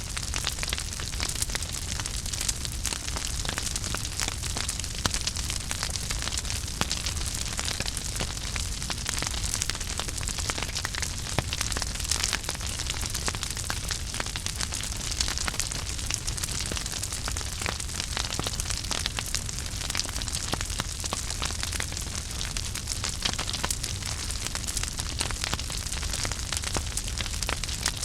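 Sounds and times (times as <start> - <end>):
wood fire crackling: 0.0 - 28.0.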